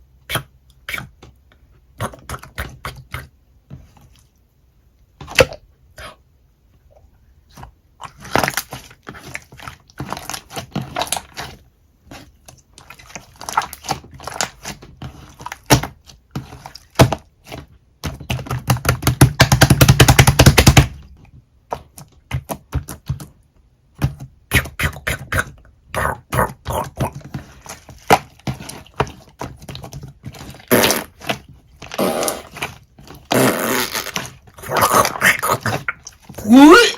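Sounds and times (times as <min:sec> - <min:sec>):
slime squeezed by hand: 0:30.4 - 0:36.9.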